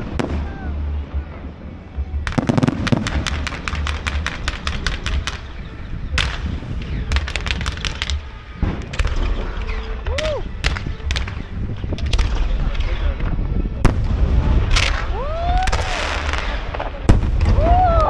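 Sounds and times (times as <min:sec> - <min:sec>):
fireworks bangs and cracks: 0:00.0 - 0:18.0
low rumble: 0:00.0 - 0:18.0
firework whistle: 0:14.7 - 0:16.8.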